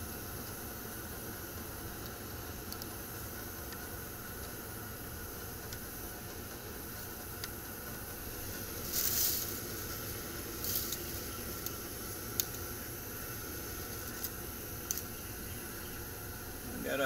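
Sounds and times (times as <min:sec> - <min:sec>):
gas heating unit running: 0:00.0 - 0:17.0
short hiss: 0:08.7 - 0:11.4.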